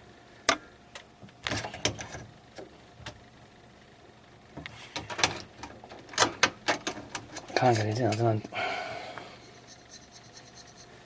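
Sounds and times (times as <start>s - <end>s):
heatsink scraping: 9.3s - 11.0s.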